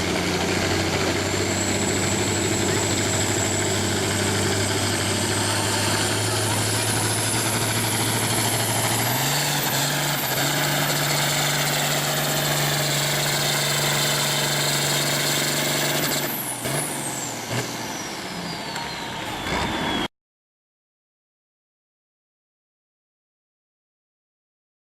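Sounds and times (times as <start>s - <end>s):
high whine: 0.0s - 16.2s
tractor engine revving hard: 0.0s - 20.1s.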